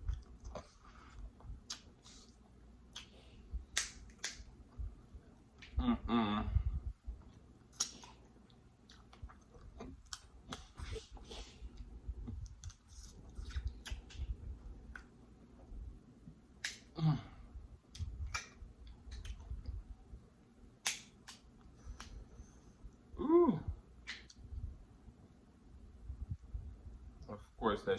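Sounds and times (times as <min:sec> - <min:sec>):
person chewing food: 0:00.0 - 0:04.4, 0:07.2 - 0:15.1
mouth clicks and smacks: 0:00.0 - 0:04.5, 0:07.2 - 0:15.2, 0:16.6 - 0:17.0, 0:17.8 - 0:19.8, 0:20.8 - 0:22.2, 0:24.0 - 0:24.5
person humming with enjoyment: 0:05.7 - 0:06.8, 0:23.2 - 0:23.8.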